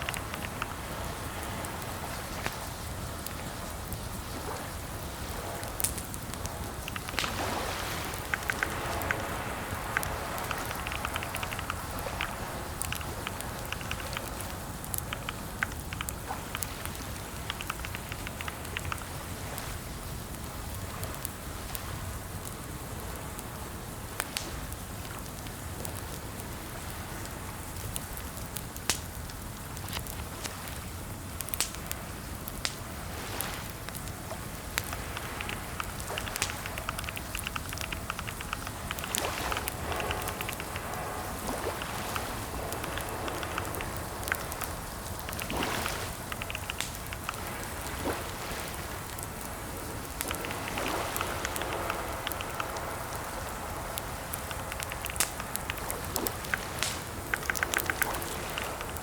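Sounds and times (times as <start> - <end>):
background hiss: 0.0 - 59.0
keyboard typing: 10.0 - 14.4, 15.0 - 16.8, 34.9 - 40.8, 41.5 - 47.4, 50.2 - 52.8.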